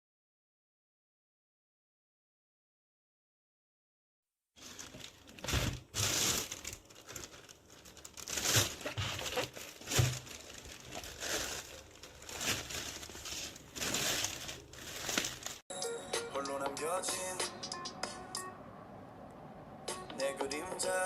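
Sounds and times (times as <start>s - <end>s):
plastic packaging crinkling: 4.6s - 15.6s.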